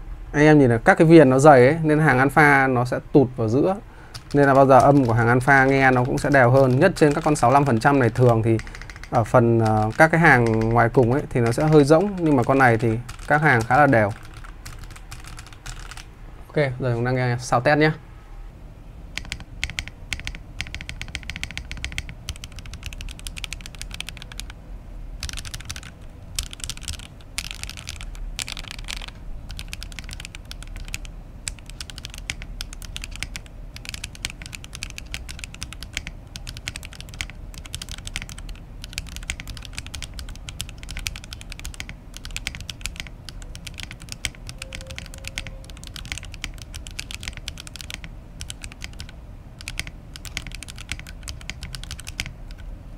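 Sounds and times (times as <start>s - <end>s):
mechanical keyboard typing: 4.1s - 16.1s, 19.2s - 24.6s, 25.2s - 52.7s.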